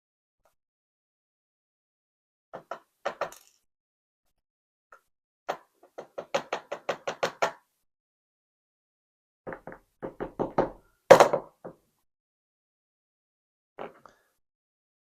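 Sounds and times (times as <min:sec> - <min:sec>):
lock parts knocking on hard surface: 0:02.6 - 0:03.6, 0:05.5 - 0:07.6, 0:09.5 - 0:11.8.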